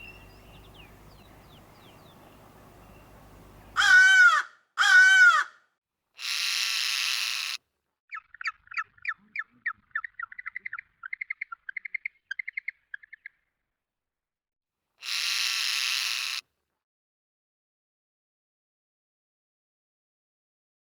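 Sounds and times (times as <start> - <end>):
rasping squawk: 3.7 - 5.6, 6.2 - 12.7, 15.0 - 16.4
harsh caw: 3.8 - 7.6, 15.0 - 16.4.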